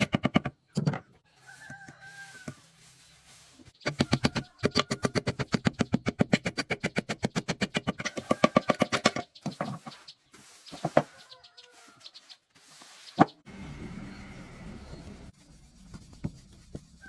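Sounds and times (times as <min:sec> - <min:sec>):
chickens clucking: 0:03.7 - 0:05.8, 0:07.9 - 0:12.5.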